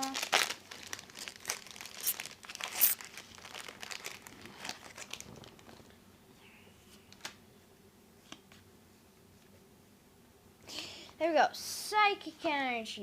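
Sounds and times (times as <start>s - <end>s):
foil wrapper crinkling: 0.0s - 6.0s
wrapper ripping: 0.0s - 6.0s.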